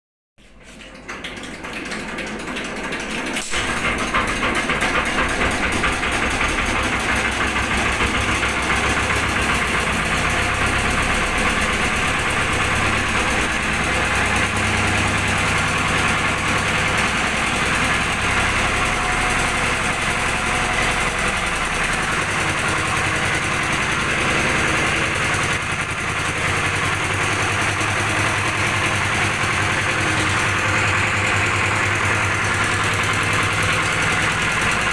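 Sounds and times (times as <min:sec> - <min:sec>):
engine running: 0:00.4 - 0:34.9
sharp click: 0:03.4 - 0:03.9.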